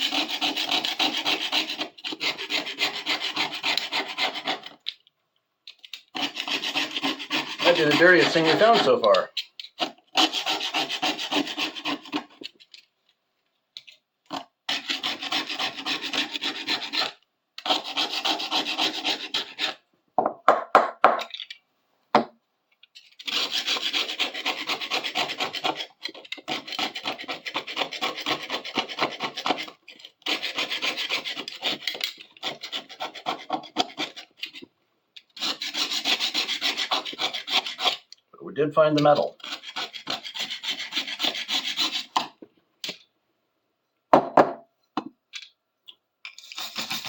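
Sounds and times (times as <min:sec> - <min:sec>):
rubbing rusty metal part: 0:06.2 - 0:12.7.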